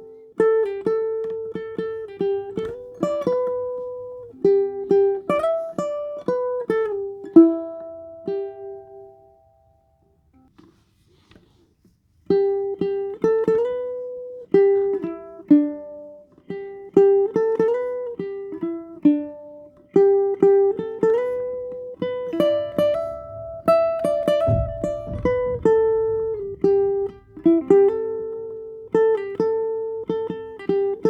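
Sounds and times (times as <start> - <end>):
ukulele played fingerstyle: 4.4 - 9.1, 12.3 - 28.3
low bump: 22.2 - 28.6.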